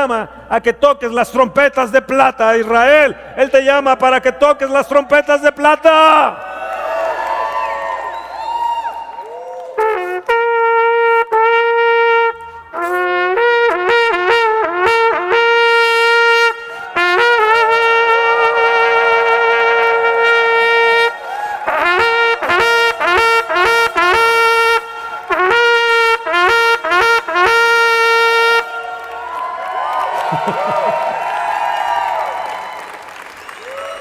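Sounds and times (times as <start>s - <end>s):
trumpet call: 9.6s - 29.4s.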